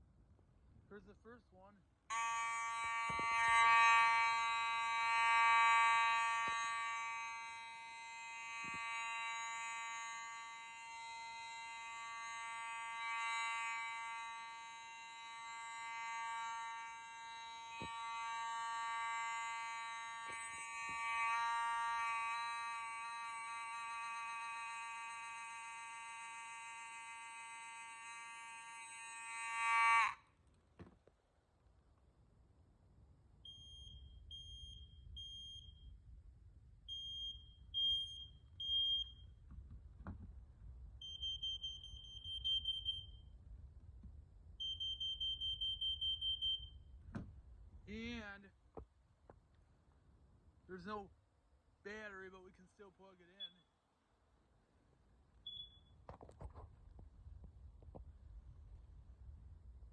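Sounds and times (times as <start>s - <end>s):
fire alarm buzzing: 2.1s - 30.2s, 33.5s - 35.9s, 36.9s - 39.3s, 41.0s - 43.2s, 44.6s - 46.8s.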